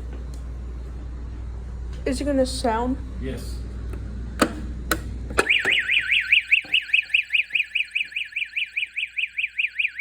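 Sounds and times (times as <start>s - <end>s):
fire alarm sweeping tone: 5.4s - 10.0s.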